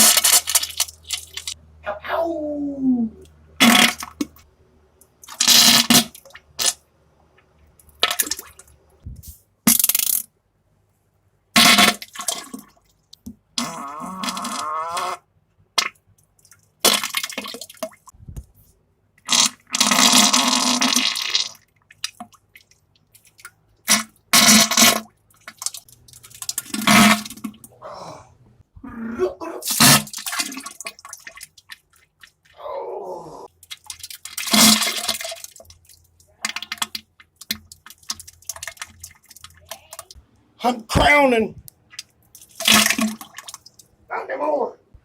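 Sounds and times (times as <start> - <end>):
wet sputtering farts: 3.6 - 4.3, 5.3 - 6.8, 11.6 - 12.6, 13.6 - 15.2, 19.3 - 21.6, 23.9 - 25.1, 26.6 - 27.6, 34.4 - 35.3.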